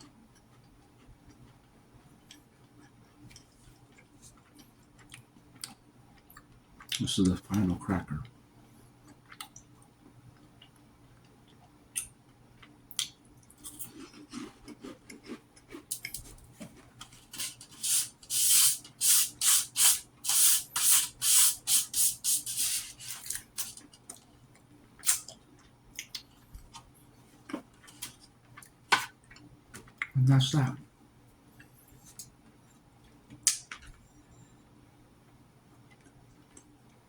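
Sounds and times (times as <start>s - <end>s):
chewing crunchy cracker: 2.2s - 7.0s, 10.4s - 17.5s.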